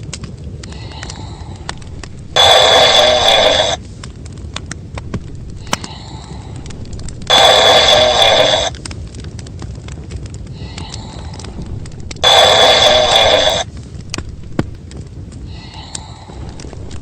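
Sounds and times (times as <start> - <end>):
soft breathing: 0.6 - 4.2, 5.0 - 8.7, 10.4 - 17.0
cartoon snoring: 2.3 - 3.8, 7.3 - 8.7, 12.2 - 13.6.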